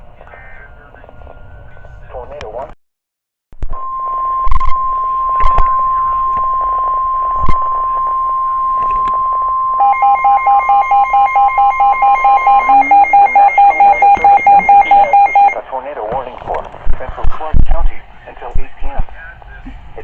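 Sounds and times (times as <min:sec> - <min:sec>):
lower alert tone beeping: 0:03.7 - 0:15.6
steady alarm tone: 0:03.8 - 0:15.6.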